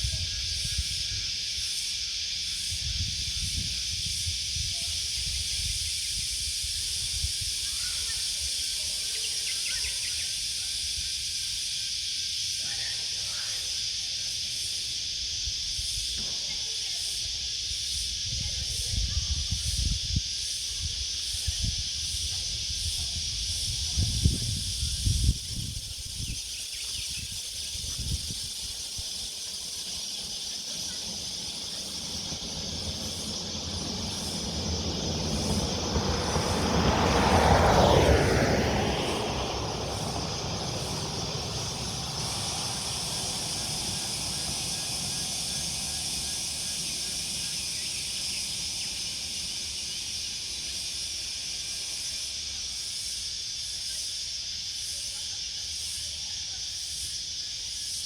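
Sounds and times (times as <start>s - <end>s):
steady high-pitched hiss: 0.0s - 58.0s
vehicle passing by: 29.2s - 52.0s.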